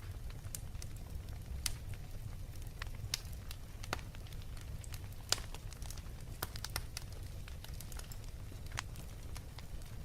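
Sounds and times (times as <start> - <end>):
wood fire crackling: 0.0 - 10.0.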